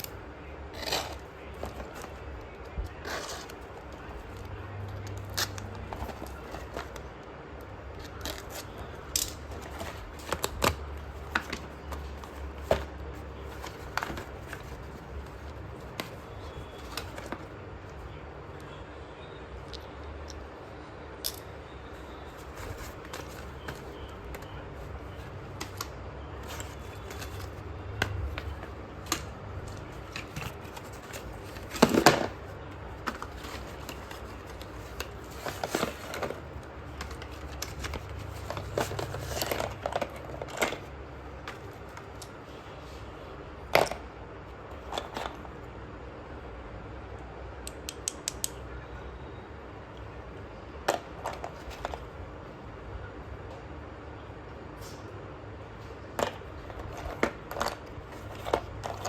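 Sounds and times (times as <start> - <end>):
slate pencils cracking: 7.9 - 17.5.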